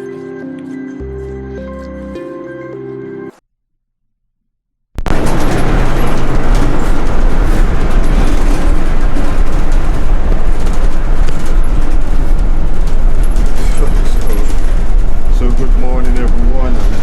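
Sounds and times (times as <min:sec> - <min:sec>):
bus engine and road rumble: 0:05.1 - 0:17.0.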